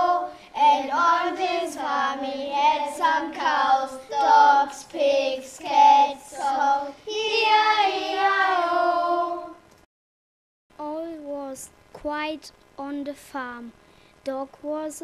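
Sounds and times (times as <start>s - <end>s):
child singing without words: 0.0s - 9.6s.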